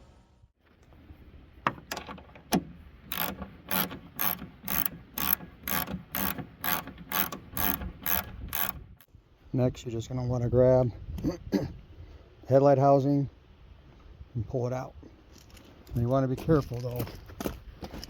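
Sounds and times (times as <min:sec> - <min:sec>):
ratchet wrench clicking: 0:03.1 - 0:09.1.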